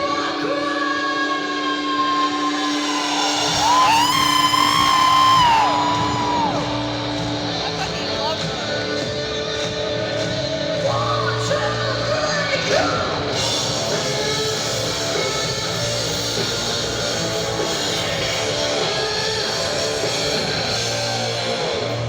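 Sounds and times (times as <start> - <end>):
woman singing: 0.0 - 2.7
live hard rock band: 0.0 - 22.0.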